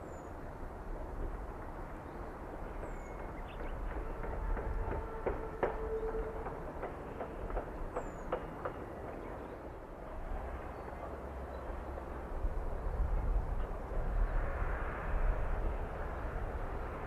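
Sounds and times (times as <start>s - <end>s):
distant train rumble: 0.0s - 17.0s
wheels clicking over rail joints: 1.1s - 9.5s.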